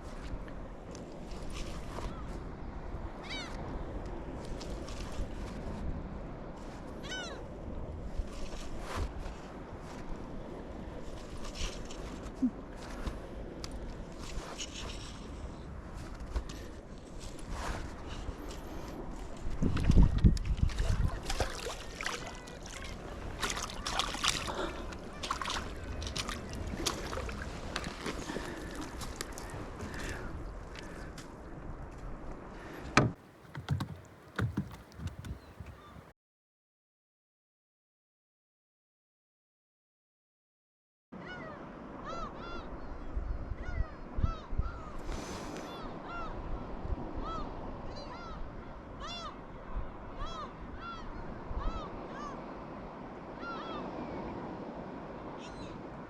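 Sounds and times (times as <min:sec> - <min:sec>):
water sloshing against hull: 0:16.0 - 0:31.2, 0:32.6 - 0:36.1
clicks knocks and scrapes: 0:32.9 - 0:35.8
birds calling: 0:33.2 - 0:36.1.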